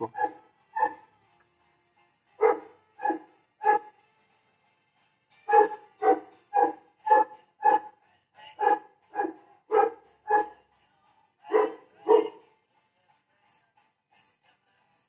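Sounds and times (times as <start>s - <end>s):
dog barking: 0.0s - 1.1s, 2.4s - 3.9s, 5.5s - 7.9s, 8.6s - 10.6s, 11.5s - 12.4s.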